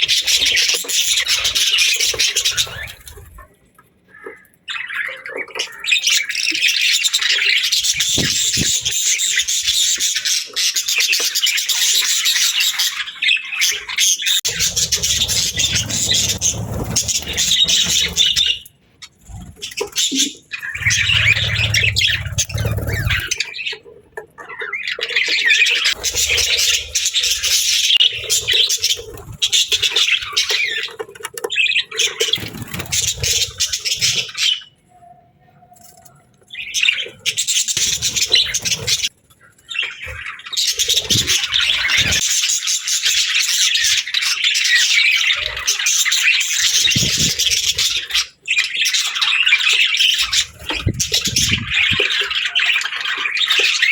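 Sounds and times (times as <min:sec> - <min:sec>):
budgerigars chirping and chattering: 0:00.0 - 0:03.5, 0:04.1 - 0:34.8, 0:36.0 - 0:53.9
low rumble: 0:20.8 - 0:23.3.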